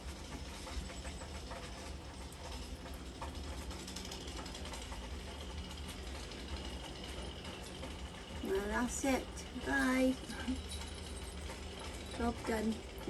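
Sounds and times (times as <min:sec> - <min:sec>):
rain pattering: 0:00.0 - 0:13.0.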